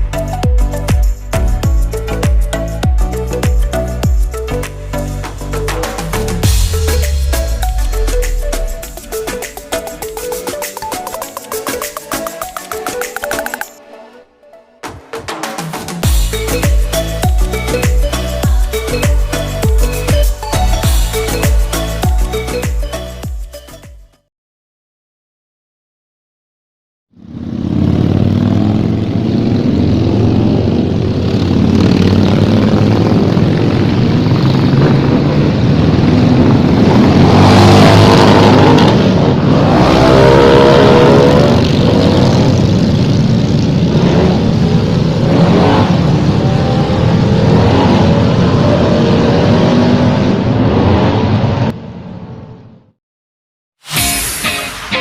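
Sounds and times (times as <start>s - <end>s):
road and wind noise: 27.2s - 53.0s.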